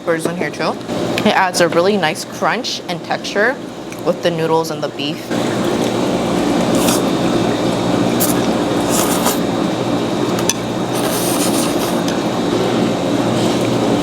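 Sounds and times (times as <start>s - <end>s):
steady background hum: 0.0s - 14.0s
chewing crunchy wet food: 6.6s - 7.3s, 8.1s - 9.6s, 10.9s - 12.2s.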